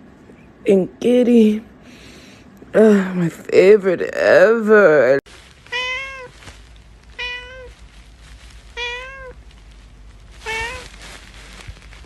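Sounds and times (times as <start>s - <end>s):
cat meowing: 5.7s - 6.4s, 7.1s - 7.8s, 8.7s - 9.4s, 10.4s - 10.9s.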